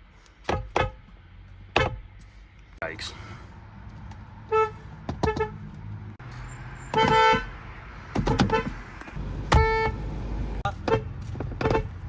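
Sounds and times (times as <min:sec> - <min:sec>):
car horn honking: 0:04.5 - 0:05.6, 0:06.8 - 0:07.6, 0:08.3 - 0:08.8, 0:09.5 - 0:10.0, 0:10.7 - 0:12.0.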